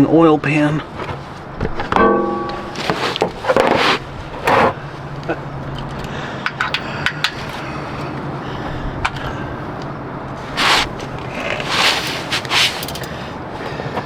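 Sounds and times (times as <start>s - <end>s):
plastic pan scraping pavement: 2.7s - 4.8s, 10.4s - 13.2s.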